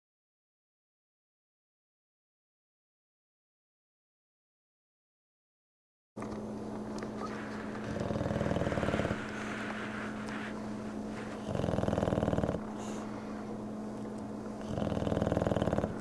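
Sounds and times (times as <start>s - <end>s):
steady low hum: 6.2s - 16.0s
dog snoring: 7.2s - 13.2s, 14.6s - 16.0s.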